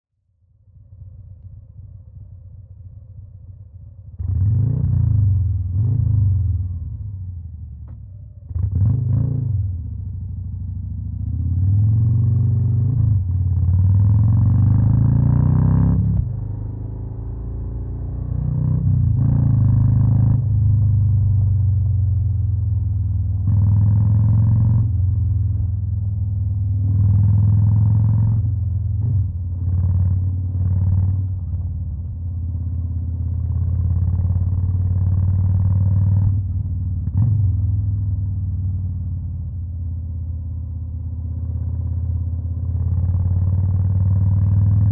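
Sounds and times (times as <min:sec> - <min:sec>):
motorcycle engine revving: 0:04.1 - 0:07.2, 0:08.4 - 0:22.3, 0:23.1 - 0:39.3.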